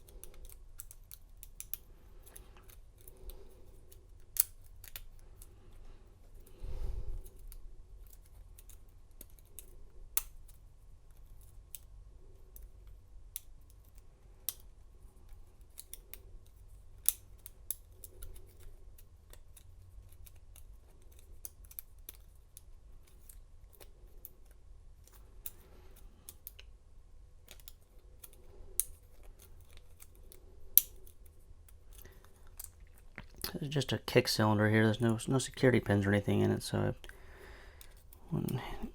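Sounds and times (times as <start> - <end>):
lock pick metallic clicks: 0.0 - 5.1.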